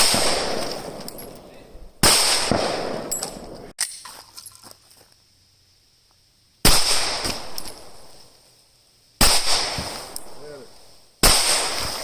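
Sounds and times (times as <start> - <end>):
pistol shots echoing: 0.0 - 3.6, 6.6 - 7.7, 9.2 - 10.3, 11.2 - 12.0.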